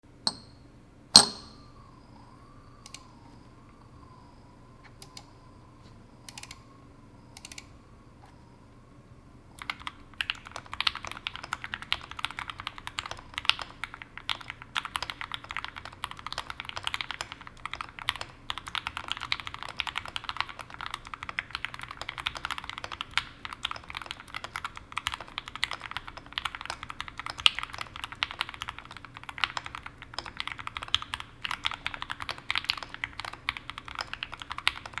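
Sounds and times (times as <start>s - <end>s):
keyboard clicks: 2.8s - 3.1s, 4.8s - 5.3s, 6.3s - 6.6s, 7.4s - 7.7s, 9.6s - 35.0s
fast mechanical keyboard typing: 6.3s - 6.6s, 7.4s - 7.7s, 9.6s - 35.0s.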